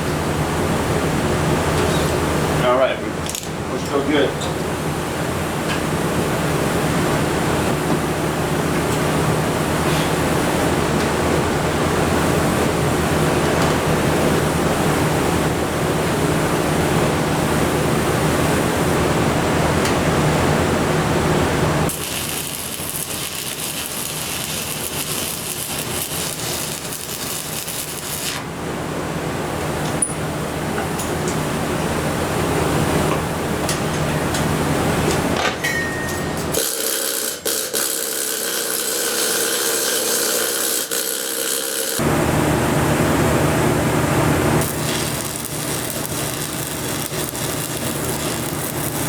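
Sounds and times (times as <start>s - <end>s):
welding arc crackling and hissing: 21.8s - 28.5s, 36.6s - 42.3s, 43.7s - 49.0s.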